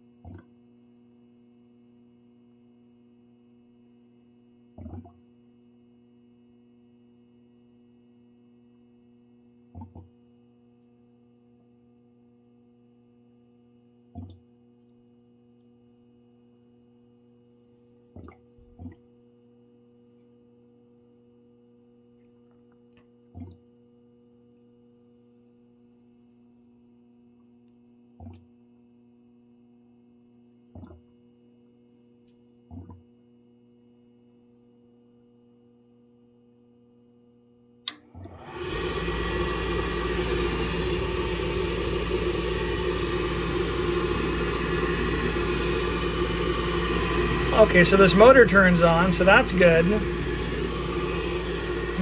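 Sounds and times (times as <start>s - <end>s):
furnace motor running: 38.2s - 52.0s
low electrical hum: 38.2s - 52.0s.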